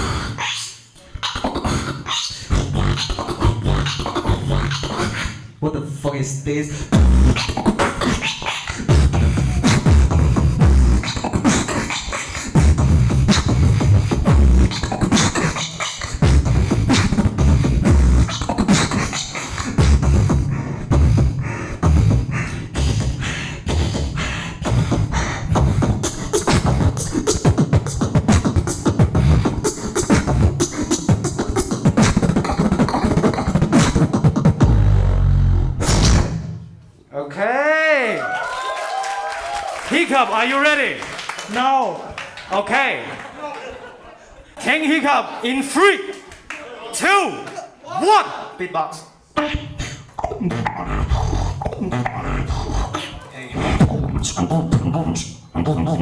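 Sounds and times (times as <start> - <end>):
beatboxing: 0.0 - 36.8, 49.3 - 56.0.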